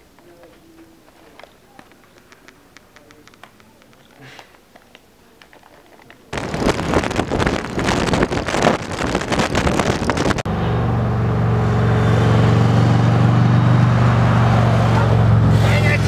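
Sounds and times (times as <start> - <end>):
vehicle engine running: 6.4 - 16.0.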